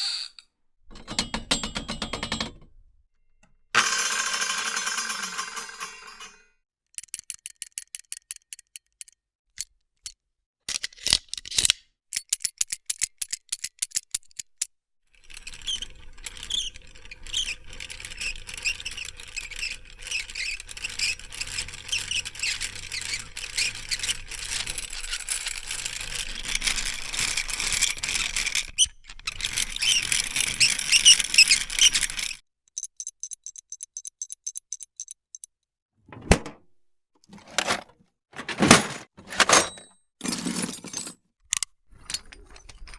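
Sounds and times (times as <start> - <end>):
squeaking and rattling machinery: 15.2 - 35.5, 37.3 - 40.4
mechanical clicking: 32.8 - 35.5.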